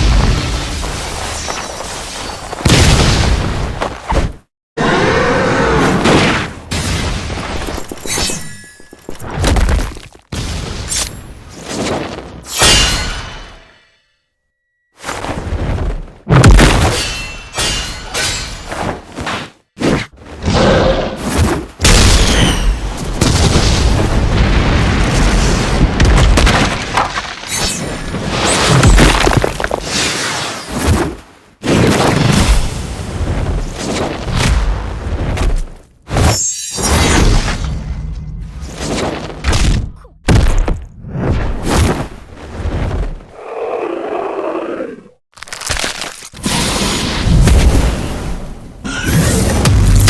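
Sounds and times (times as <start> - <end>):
debris crashing and shattering: 7.5 - 11.2, 28.2 - 30.5, 45.4 - 48.2.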